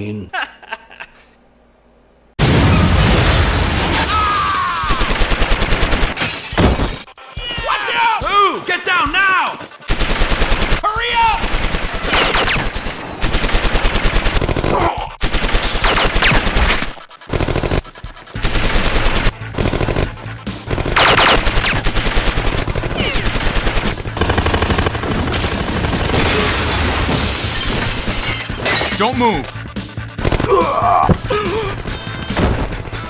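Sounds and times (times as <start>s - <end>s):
machine gun fire: 2.4s - 6.2s, 9.9s - 28.2s.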